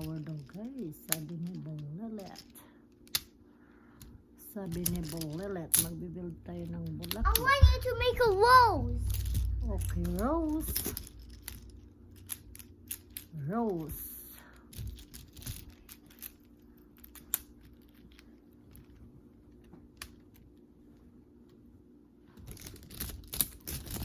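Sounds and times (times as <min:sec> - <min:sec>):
magnetic toy pieces clicking: 0:00.0 - 0:03.4, 0:04.0 - 0:07.8, 0:09.1 - 0:20.4.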